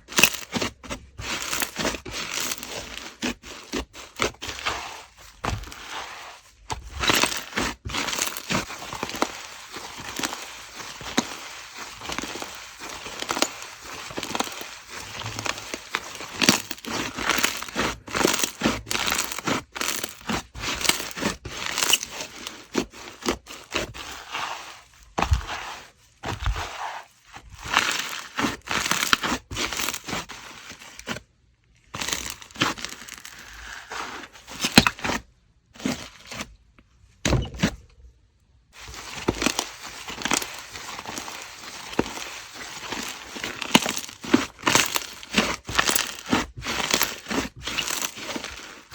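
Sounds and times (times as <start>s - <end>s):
slime crackling and popping: 6.9s - 22.2s.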